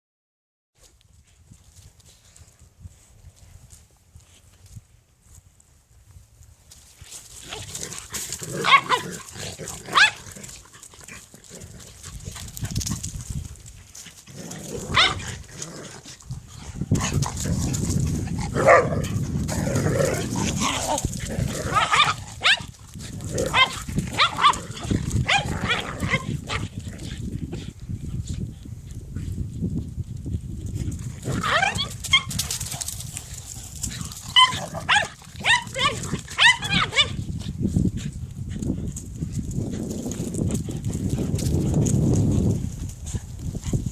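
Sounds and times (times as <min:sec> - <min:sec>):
dogs fighting: 0:07.4 - 0:27.6, 0:30.9 - 0:37.3.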